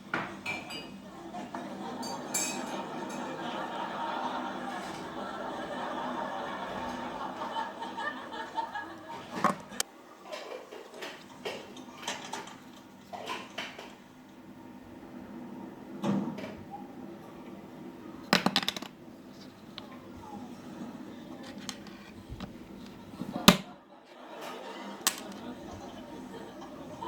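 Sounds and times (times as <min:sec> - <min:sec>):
small objects clicking and knocking: 0:18.4 - 0:19.0, 0:25.1 - 0:25.4.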